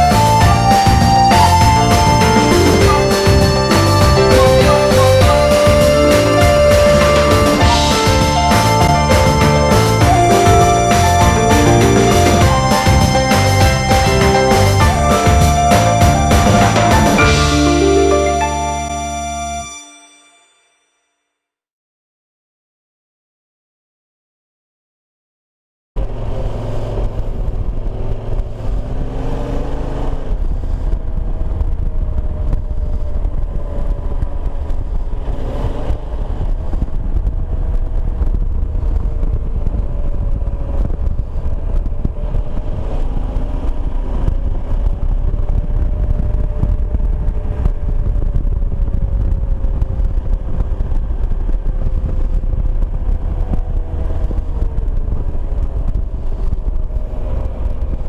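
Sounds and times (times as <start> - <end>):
motorcycle engine revving: 0.0 - 19.6, 26.0 - 58.0
low wind rumble on microphone: 26.0 - 58.0.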